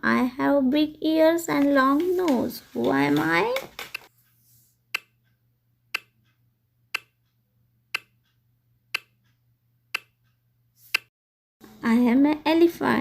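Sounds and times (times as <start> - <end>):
clock ticks: 4.9 - 11.1.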